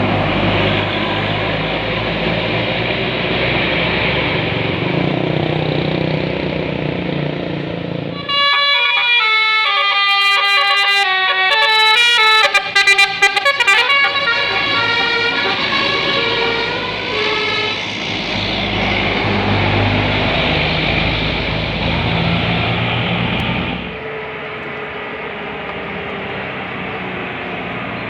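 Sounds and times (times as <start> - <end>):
bus engine running: 0.0 - 28.0
road noise: 0.0 - 28.0
musical bus horn melody: 8.2 - 18.0.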